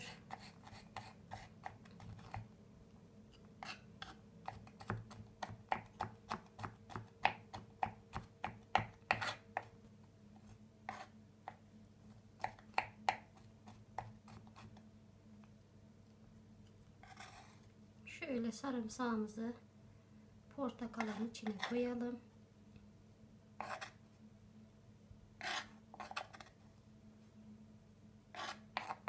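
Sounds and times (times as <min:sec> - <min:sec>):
knife chopping garlic: 0:00.0 - 0:02.5, 0:03.6 - 0:09.7, 0:12.4 - 0:14.8, 0:21.0 - 0:21.8, 0:28.4 - 0:29.0.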